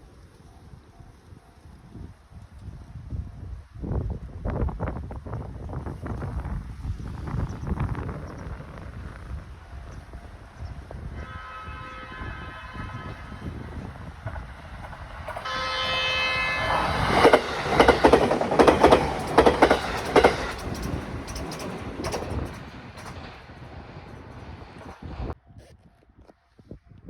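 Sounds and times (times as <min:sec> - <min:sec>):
train horn blast: 0:11.0 - 0:14.1, 0:15.4 - 0:18.1
wheels clattering over rail joints: 0:13.8 - 0:25.1.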